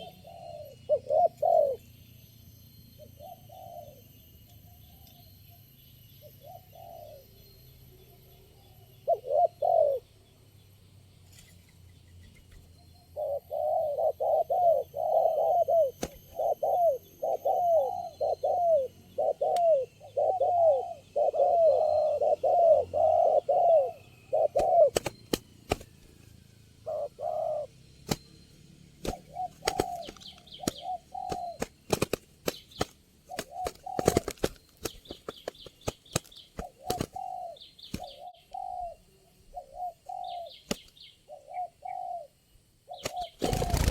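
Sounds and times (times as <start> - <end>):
doves cooing: 0.0 - 1.9, 3.0 - 4.2, 6.2 - 7.4, 8.6 - 10.1, 13.2 - 26.1, 26.7 - 28.3, 29.0 - 43.9.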